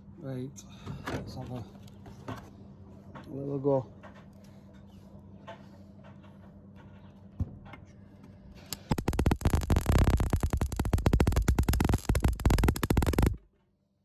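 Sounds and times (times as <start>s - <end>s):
welder low hum: 8.8s - 13.4s
welding arc crackling and buzzing: 8.8s - 13.4s.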